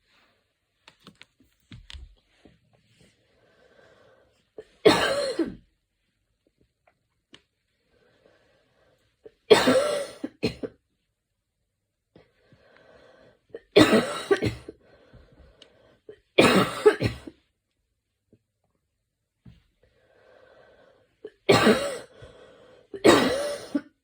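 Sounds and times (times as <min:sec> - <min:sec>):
woman coughing harshly: 0:04.8 - 0:05.6, 0:09.5 - 0:10.8, 0:13.7 - 0:14.8, 0:16.4 - 0:17.4, 0:21.4 - 0:22.1, 0:23.0 - 0:24.0.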